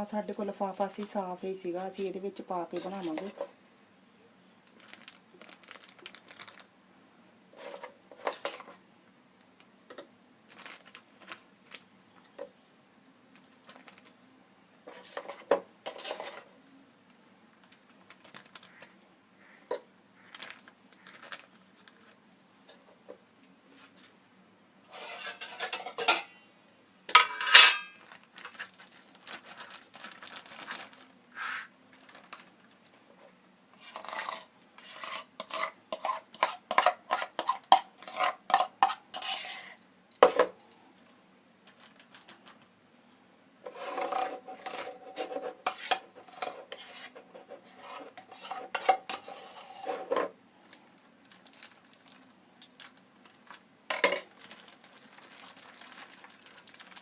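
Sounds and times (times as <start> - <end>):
metal spoon scraping a bowl: 14.9 - 16.5, 24.9 - 26.6, 33.8 - 40.4, 43.7 - 50.3.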